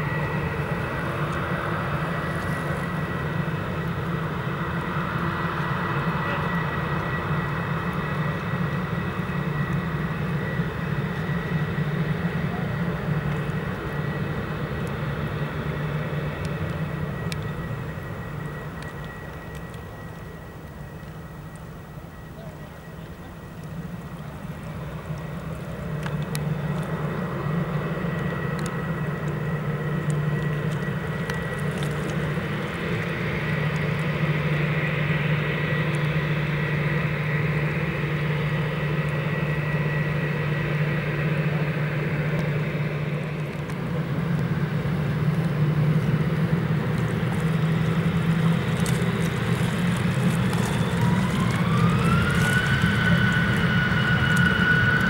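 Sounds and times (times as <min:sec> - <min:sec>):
jet engines whining: 0:00.0 - 0:55.0
low hum: 0:00.0 - 0:55.0.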